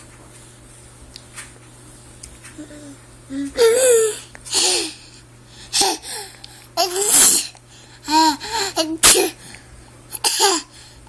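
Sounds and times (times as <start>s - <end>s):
baby fake sneezing: 6.8s - 7.6s, 8.8s - 9.4s.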